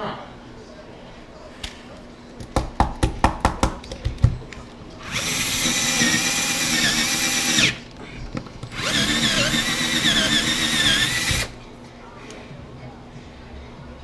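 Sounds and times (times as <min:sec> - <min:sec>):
electric drill whining: 0:05.0 - 0:07.8, 0:08.8 - 0:11.6.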